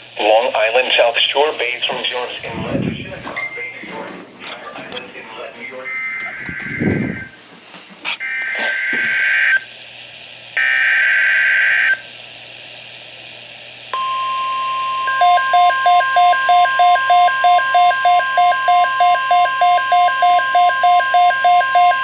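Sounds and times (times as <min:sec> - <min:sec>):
pulsing alarm beeps: 0:05.8 - 0:07.3, 0:14.0 - 0:22.0.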